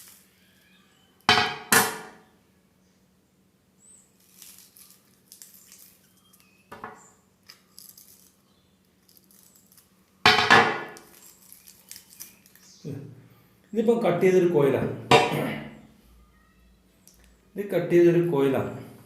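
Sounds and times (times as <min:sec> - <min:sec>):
faint steady hum: 0:00.0 - 0:19.0
loud metallic clank: 0:01.3 - 0:02.2, 0:15.1 - 0:15.7
copper wire crackling: 0:09.0 - 0:12.8.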